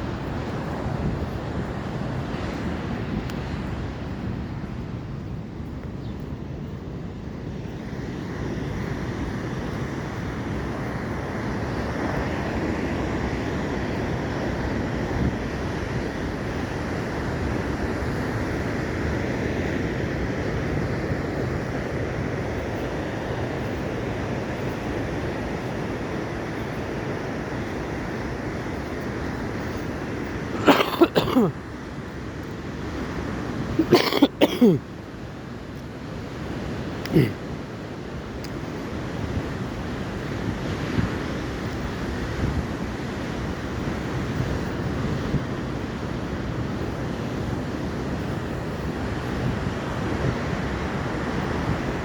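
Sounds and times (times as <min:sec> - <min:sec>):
ocean surf rushing: 0:00.0 - 0:05.2, 0:06.4 - 0:52.0
wind buffeting microphone: 0:00.0 - 0:07.4.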